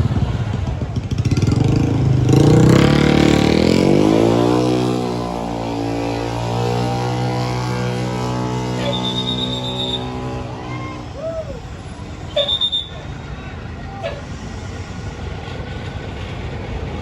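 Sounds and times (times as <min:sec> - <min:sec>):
vehicle engine revving: 0:00.0 - 0:17.0.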